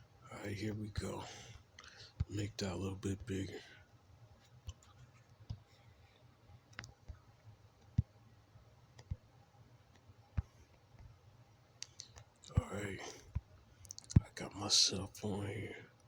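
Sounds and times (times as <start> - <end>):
faint low hum: 0.0 - 16.0
computer mouse clicking: 6.7 - 7.2, 9.0 - 9.2.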